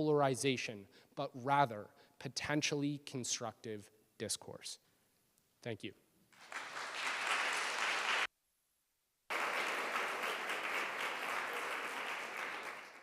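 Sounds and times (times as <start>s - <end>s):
audience applauding: 6.3s - 8.3s, 9.3s - 13.0s.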